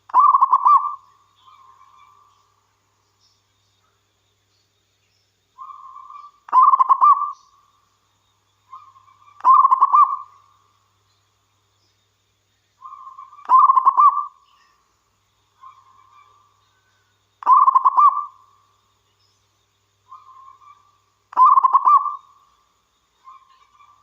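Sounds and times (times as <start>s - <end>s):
dove cooing: 0.1s - 1.0s, 5.6s - 7.4s, 8.8s - 10.3s, 12.9s - 14.3s, 17.4s - 18.3s, 20.2s - 22.2s.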